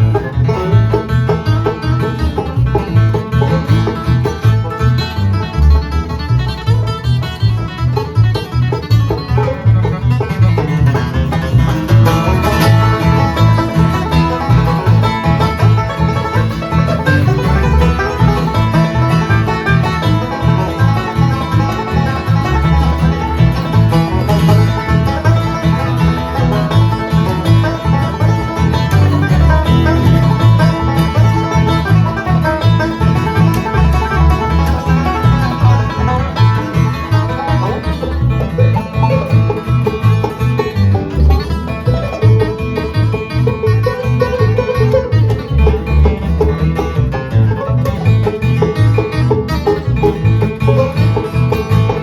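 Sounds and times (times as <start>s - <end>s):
banjo picking: 0.0s - 52.0s
bluegrass band playing: 0.0s - 52.0s.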